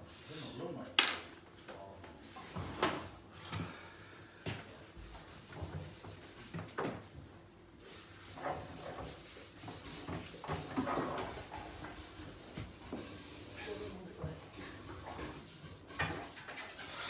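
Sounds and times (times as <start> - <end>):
handling noises: 1.0 - 1.4.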